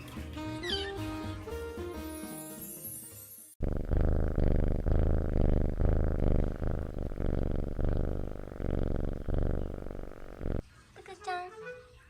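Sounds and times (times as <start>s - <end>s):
cat purring: 3.6s - 10.6s.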